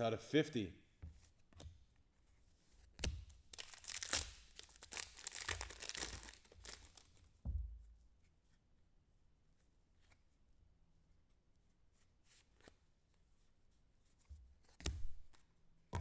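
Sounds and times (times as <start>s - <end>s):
cards being handled: 3.0s - 7.2s
card pack wrappers crinkling: 3.5s - 7.2s
soft knock: 7.4s - 8.0s.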